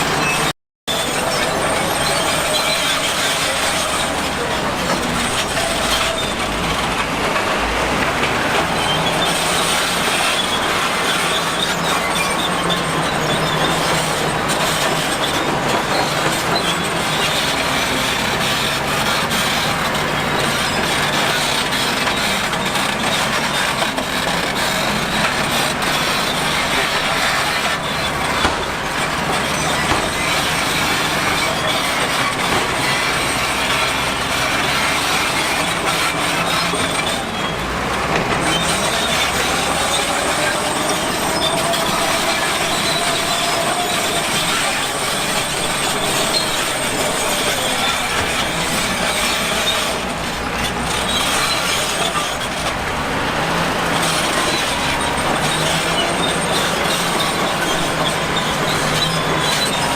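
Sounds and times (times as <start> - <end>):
heavy machinery running: 0.0 - 59.9
metallic clanks and knocks: 23.1 - 50.0.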